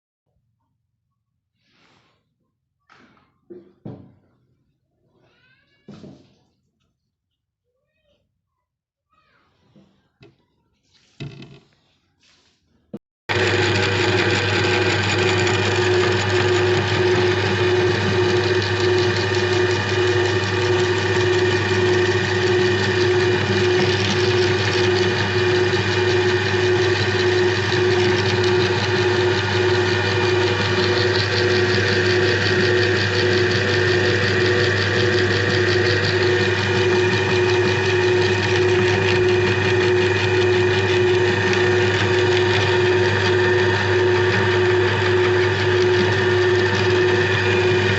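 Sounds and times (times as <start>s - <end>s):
meat grinder motor humming: 13.3s - 47.9s.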